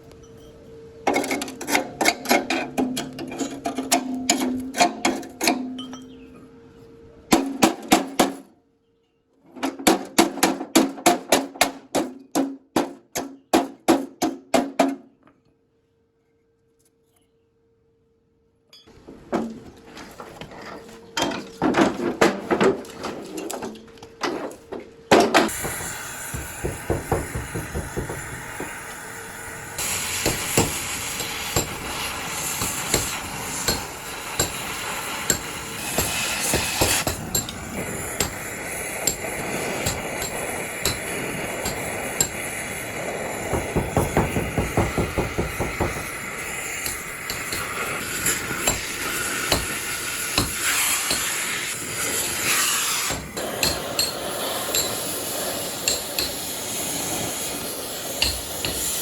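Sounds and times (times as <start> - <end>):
hissing workshop noise: 0.0 - 8.6, 9.4 - 15.1, 18.8 - 59.0
hammer striking metal: 25.1 - 28.9, 29.8 - 42.6, 43.5 - 51.4, 53.1 - 55.2, 55.9 - 56.5, 58.2 - 59.0.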